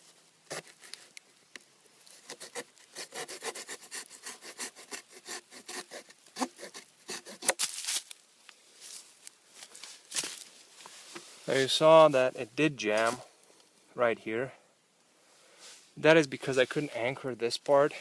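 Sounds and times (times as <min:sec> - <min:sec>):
knife saw rasping through wood: 0:02.2 - 0:07.6.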